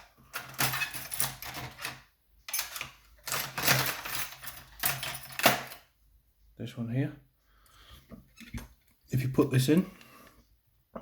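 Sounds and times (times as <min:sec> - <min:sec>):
metal tools clattering: 0:00.0 - 0:05.9.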